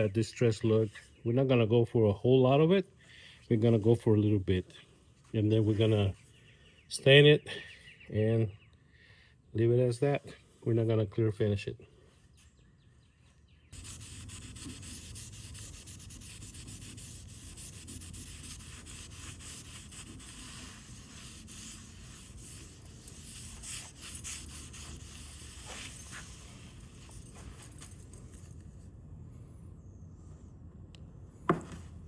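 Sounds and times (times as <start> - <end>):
sanding wood: 13.8 - 26.7
sharp scrapes: 13.8 - 28.1.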